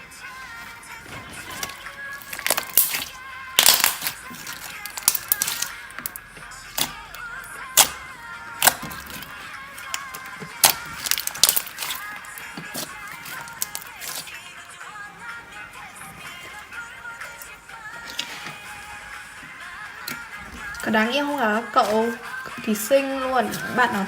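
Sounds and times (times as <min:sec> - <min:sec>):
background music: 0:00.0 - 0:24.0
slime squeezed popping bubbles: 0:01.4 - 0:06.2, 0:08.6 - 0:14.3.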